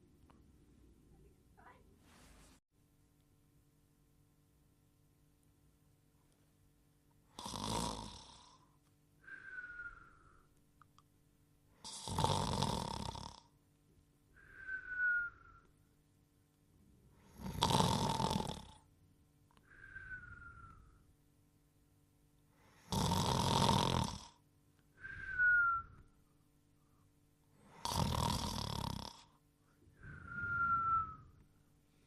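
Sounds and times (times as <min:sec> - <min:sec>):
rasping cartoon snore: 0:07.3 - 0:08.6, 0:11.8 - 0:13.5, 0:17.3 - 0:18.8, 0:22.8 - 0:24.4, 0:27.7 - 0:29.3
falling whistle: 0:14.5 - 0:15.7, 0:25.0 - 0:26.1, 0:30.0 - 0:31.4.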